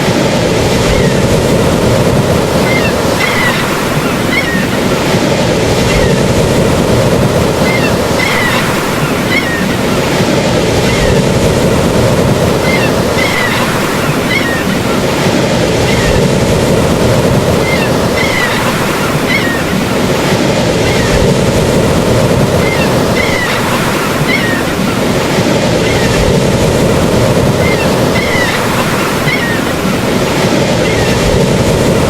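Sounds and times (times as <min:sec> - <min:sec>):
ocean surf washing: 0:00.0 - 0:32.0.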